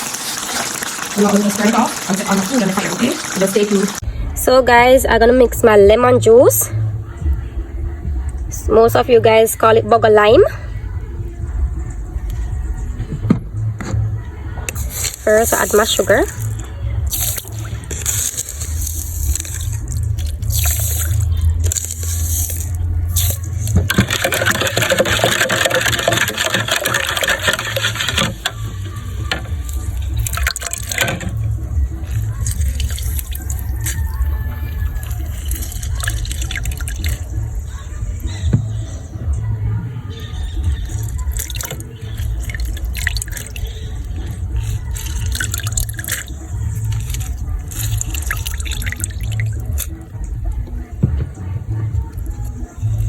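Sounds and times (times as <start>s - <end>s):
water pouring into container: 0.0s - 4.0s, 14.7s - 38.7s, 40.4s - 50.2s
steady low hum: 4.0s - 53.0s
splashes and clinks: 14.8s - 37.7s, 40.6s - 50.1s.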